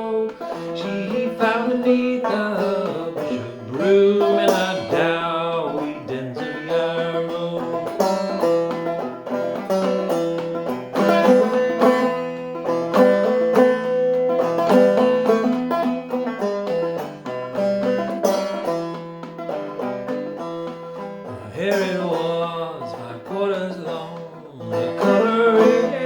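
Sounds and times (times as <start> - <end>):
banjo plucked melody: 0.0 - 26.0.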